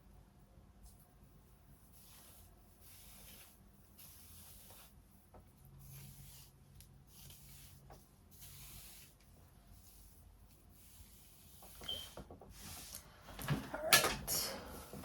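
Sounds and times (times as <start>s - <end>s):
comb brushing through hair: 1.8s - 13.1s.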